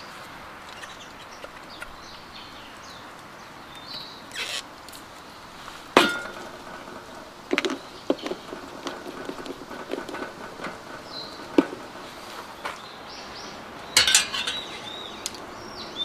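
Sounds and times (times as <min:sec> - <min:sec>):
bird chirps: 0:00.7 - 0:04.6, 0:12.4 - 0:16.0
cooking gear clinking: 0:14.0 - 0:15.2.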